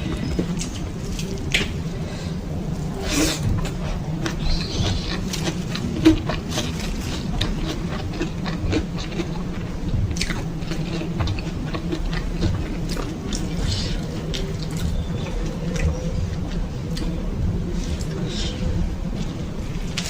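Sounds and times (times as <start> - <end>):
wet chewing and mouth clicks: 3.2 - 17.2.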